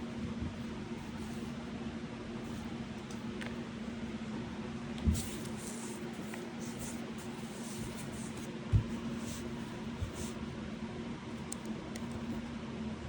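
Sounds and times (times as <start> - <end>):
steady low hum: 0.0 - 13.0
soft thumps: 7.8 - 9.2.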